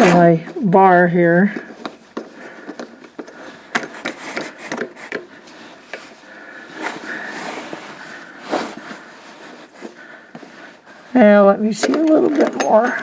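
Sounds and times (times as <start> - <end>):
metal clicks and knocks: 11.8 - 13.0.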